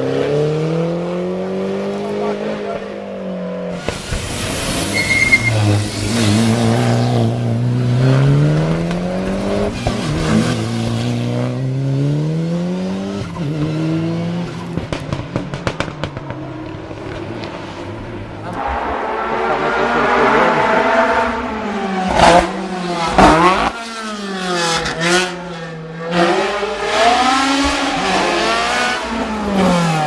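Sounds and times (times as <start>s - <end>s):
race car engine accelerating: 15.8s - 30.0s.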